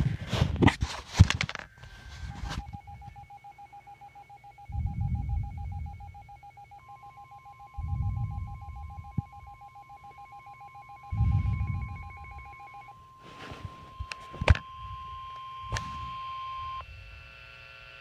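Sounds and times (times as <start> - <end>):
steady electronic beep: 2.3 - 16.8
two-tone warble: 2.6 - 16.8.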